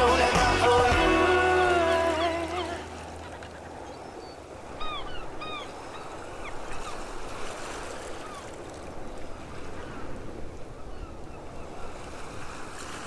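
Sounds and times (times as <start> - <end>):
seagulls calling: 0.0 - 7.4
ocean waves washing on shore: 0.0 - 13.0.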